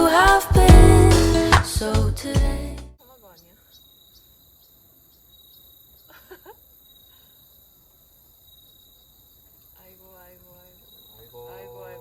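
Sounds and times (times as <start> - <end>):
faint chirps: 3.0 - 12.0
insects trilling: 3.0 - 12.0.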